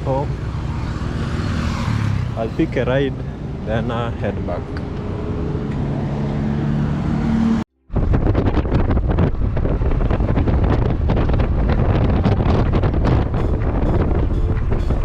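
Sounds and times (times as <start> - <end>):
vehicle engine hum: 0.0 - 15.0
wind buffeting microphone: 7.9 - 15.0.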